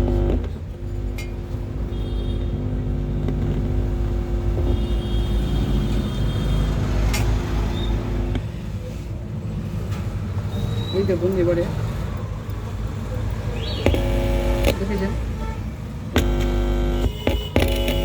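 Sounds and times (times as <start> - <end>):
subwoofer mains hum: 0.0 - 6.3, 13.8 - 15.0, 16.1 - 18.0
sharp click: 13.8 - 14.8.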